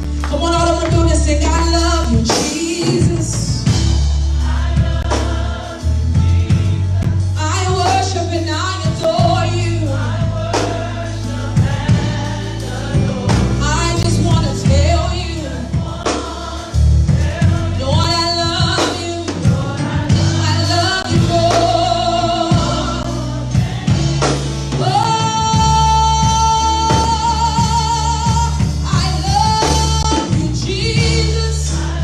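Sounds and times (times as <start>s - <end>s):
bass notes: 0.0s - 32.0s
choir and congregation singing: 0.0s - 32.0s
drum hits: 0.6s - 8.2s, 8.9s - 31.8s.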